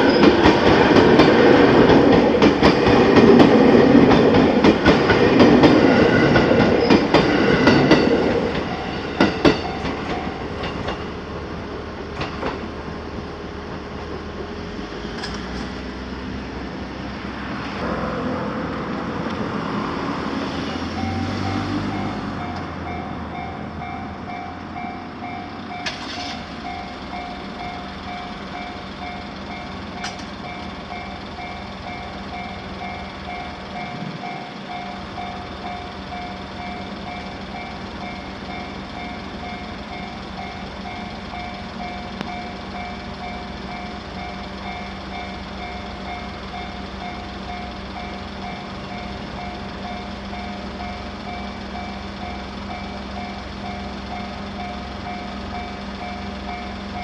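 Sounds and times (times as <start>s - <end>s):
passing train rumble: 0.0s - 57.0s
level-crossing bell dings: 5.8s - 10.9s, 20.7s - 57.0s.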